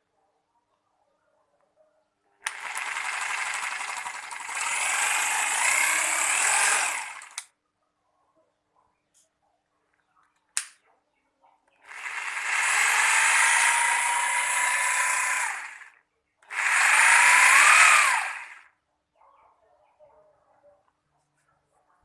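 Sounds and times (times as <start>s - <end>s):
hammer drill motor whining: 2.4s - 7.4s, 11.9s - 18.7s.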